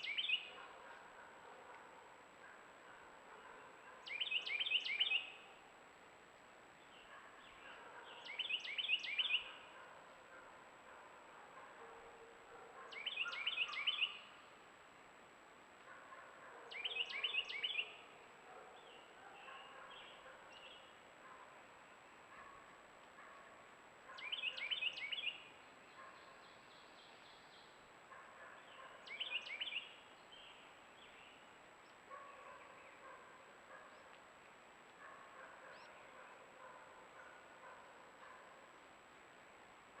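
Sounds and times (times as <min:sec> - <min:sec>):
songbird singing: 0:00.0 - 0:01.1, 0:03.4 - 0:05.6, 0:06.8 - 0:09.9, 0:12.8 - 0:14.5, 0:16.6 - 0:21.0, 0:24.1 - 0:34.2, 0:35.0 - 0:38.5.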